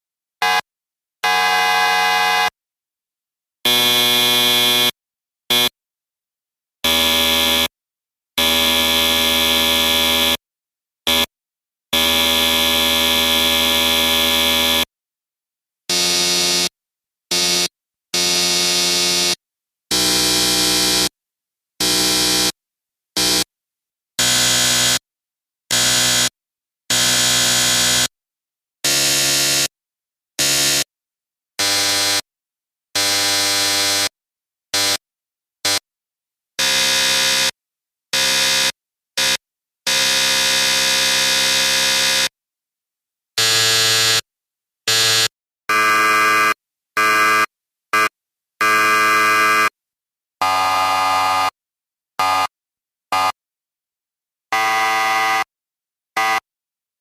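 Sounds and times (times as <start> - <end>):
electric buzzer blasts: 0.4 - 2.6, 3.7 - 5.8, 6.8 - 7.8, 8.4 - 10.4, 11.9 - 14.9, 15.9 - 21.2, 21.8 - 22.6, 23.2 - 23.5, 24.2 - 25.0, 25.7 - 28.1, 28.8 - 29.7, 30.4 - 30.9, 36.6 - 37.6, 38.2 - 42.4, 43.4 - 44.3, 44.9 - 49.8, 50.4 - 51.6, 52.2 - 53.4, 54.5 - 55.5.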